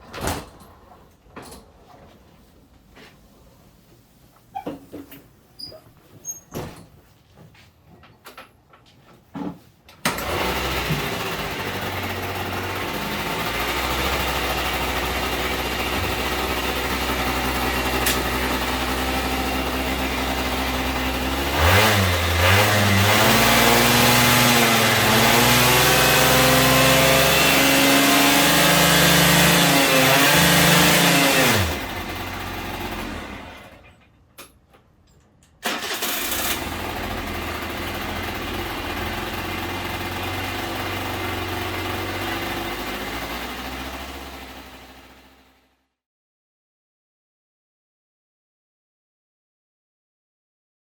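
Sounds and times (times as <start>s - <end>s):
scooter engine running and revving: 10.2s - 33.7s, 36.3s - 45.5s.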